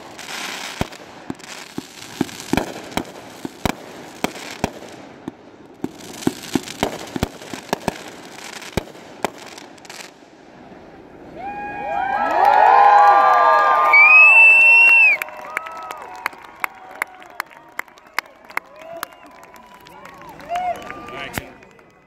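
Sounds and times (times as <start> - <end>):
firework bangs: 0.0 - 11.2
firework crackle: 0.0 - 12.2
whistling fireworks: 0.0 - 13.2, 13.9 - 22.0.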